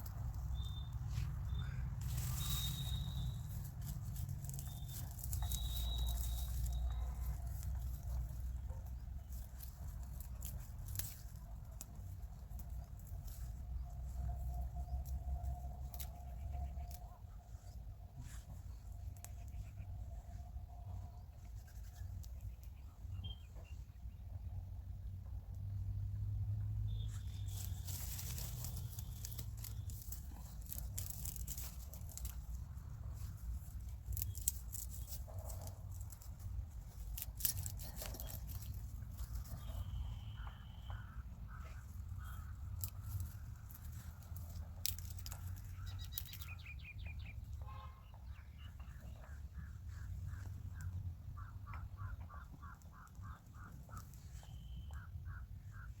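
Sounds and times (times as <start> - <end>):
high whistles and chattering trills: 0.0 - 7.9
birds calling: 0.0 - 11.3, 37.2 - 56.0
steady low rumble: 0.0 - 56.0.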